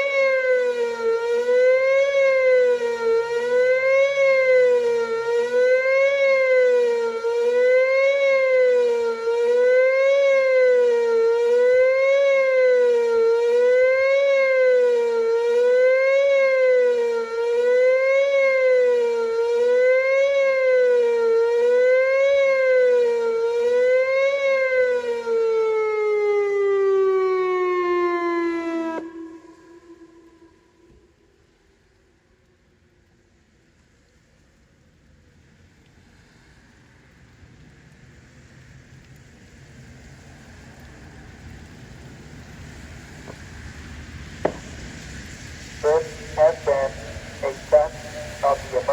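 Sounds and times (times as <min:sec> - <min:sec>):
warning siren rising and falling: 0:00.0 - 0:31.2.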